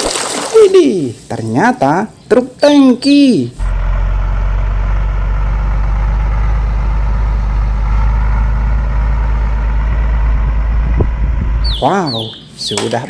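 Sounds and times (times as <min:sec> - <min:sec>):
truck engine idling: 0:02.4 - 0:12.6.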